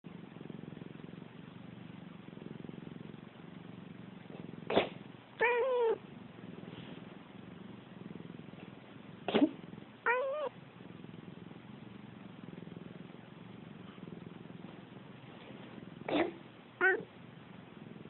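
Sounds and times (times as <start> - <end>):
cat purring: 0.0 - 18.0
cat sneezing: 4.7 - 5.0, 9.3 - 9.6, 16.1 - 16.4
cat meowing: 5.4 - 6.0, 10.0 - 10.5, 16.2 - 17.1.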